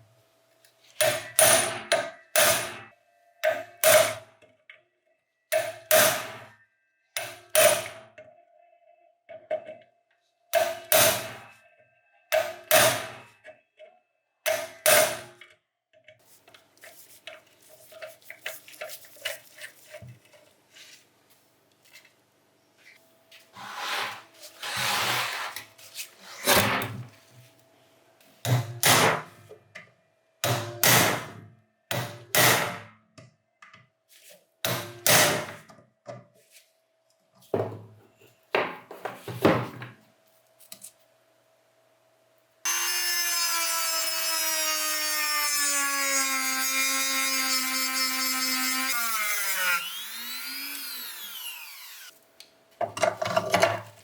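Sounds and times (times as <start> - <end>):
scraping sound: 23.5 - 27.0.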